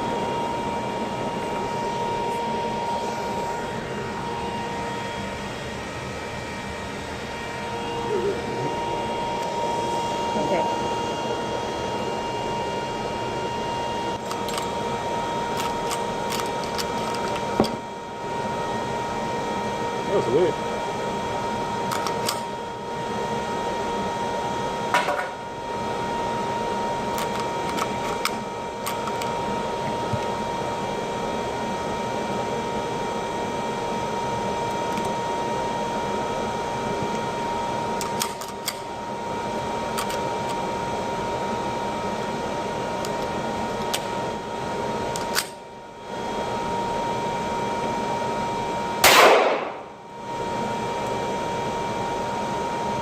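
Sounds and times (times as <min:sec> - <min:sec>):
loud gunshot: 0:49.0 - 0:49.9.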